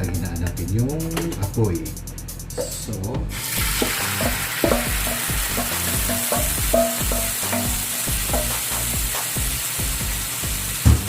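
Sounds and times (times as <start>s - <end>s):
marinade sizzling in a hot pan: 3.3s - 11.0s
utensil scraping a pan: 3.4s - 8.7s.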